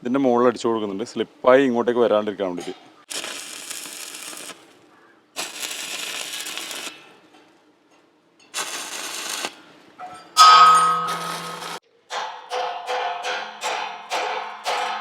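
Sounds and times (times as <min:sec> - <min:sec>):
arc welding crackling: 0:03.1 - 0:07.0, 0:08.5 - 0:09.6, 0:10.4 - 0:11.8.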